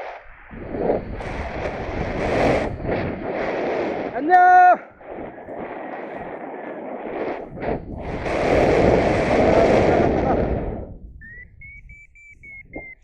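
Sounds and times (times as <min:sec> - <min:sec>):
wind rushing over microphone: 0:00.0 - 0:13.0
high whistle-like tone: 0:11.2 - 0:13.0.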